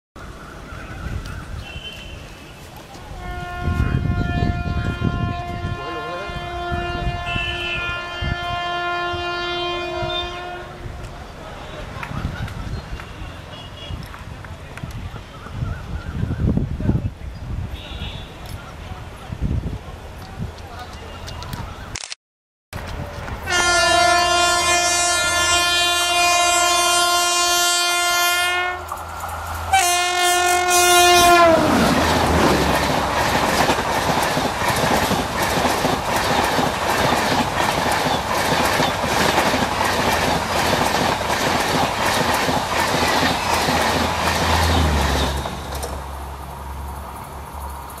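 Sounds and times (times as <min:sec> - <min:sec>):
passing train rushing: 0:00.3 - 0:17.7, 0:22.8 - 0:48.0
locomotive horn blasts: 0:01.6 - 0:10.9, 0:17.8 - 0:18.4, 0:23.4 - 0:28.9, 0:29.7 - 0:32.4
wheels clacking over rail joints: 0:28.8 - 0:46.4.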